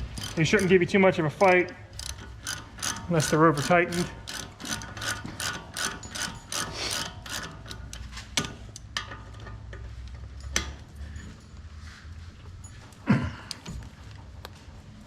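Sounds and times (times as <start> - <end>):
hand ratchet clicking: 0.0 - 9.4.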